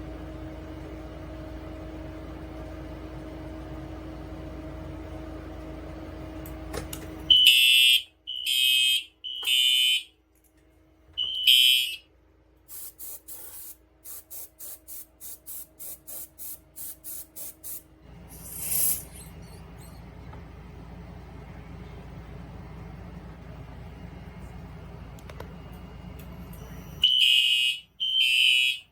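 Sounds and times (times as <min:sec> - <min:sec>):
fire alarm horn blasts: 0:07.3 - 0:10.2, 0:11.2 - 0:12.1, 0:26.7 - 0:28.9.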